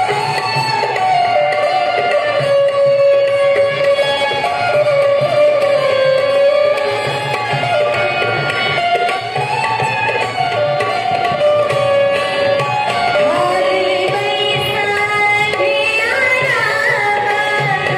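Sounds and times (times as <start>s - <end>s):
repeating drum rhythm: 6.8s - 17.9s
gliding melody: 12.1s - 15.8s.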